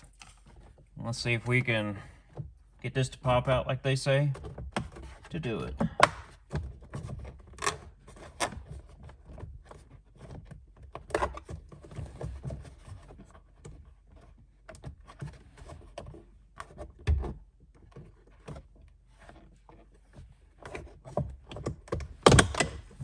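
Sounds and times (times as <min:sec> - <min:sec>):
plastic trim panel being pried: 0:05.8 - 0:08.5, 0:21.5 - 0:23.0.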